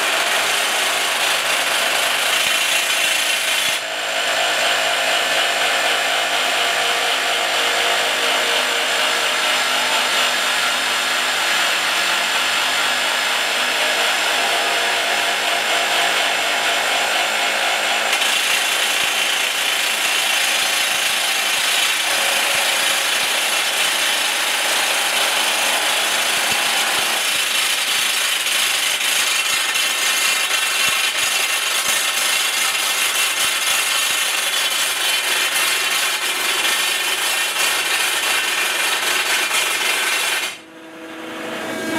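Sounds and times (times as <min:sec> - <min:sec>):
rock drill boring into rock: 0:00.0 - 0:04.7, 0:18.0 - 0:40.6.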